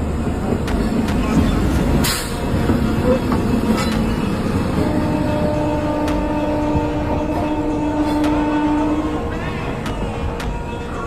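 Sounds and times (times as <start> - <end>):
train running: 0.0 - 11.0
train horn blast: 4.7 - 9.6.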